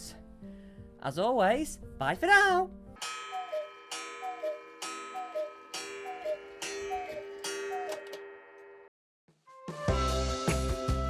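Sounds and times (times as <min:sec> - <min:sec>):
clock gong strike: 0:03.0 - 0:08.9
cuckoo clock calling: 0:03.0 - 0:08.9.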